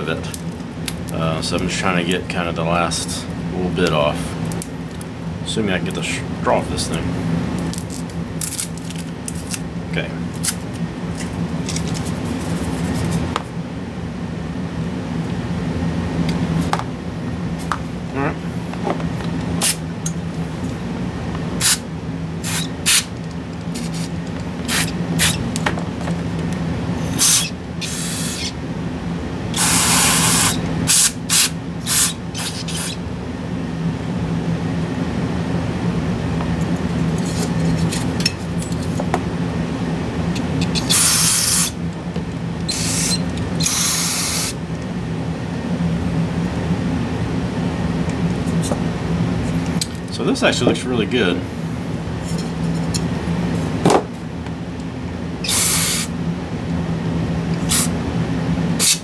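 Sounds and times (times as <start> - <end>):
steady low hum: 0.0 - 59.0
aerosol spray can hissing: 27.1 - 28.5, 29.6 - 33.0, 42.7 - 44.6, 55.5 - 56.1.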